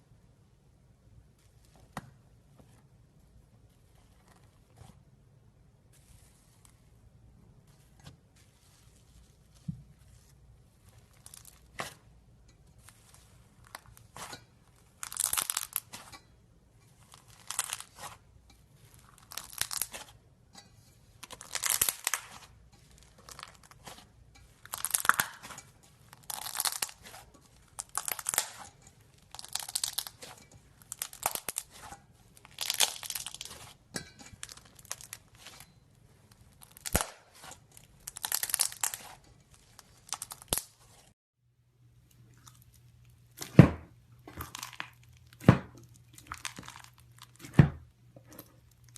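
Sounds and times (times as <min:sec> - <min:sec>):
slime squeezed popping and crackling: 0:15.0 - 0:16.0, 0:17.2 - 0:18.1, 0:19.0 - 0:20.1, 0:21.3 - 0:22.5, 0:24.6 - 0:25.6, 0:26.2 - 0:28.6, 0:29.2 - 0:31.9, 0:32.5 - 0:33.7, 0:36.6 - 0:39.2, 0:39.8 - 0:40.8.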